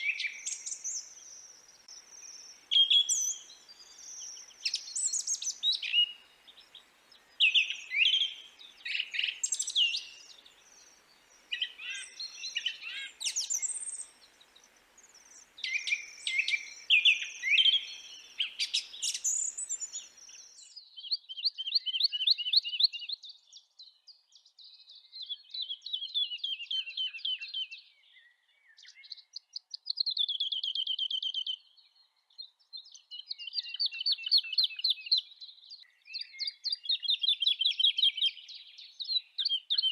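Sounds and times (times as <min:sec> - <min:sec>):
rapid bird trills: 0:00.0 - 0:20.5
faint background hiss: 0:00.0 - 0:20.8
songbirds singing: 0:00.0 - 0:39.9.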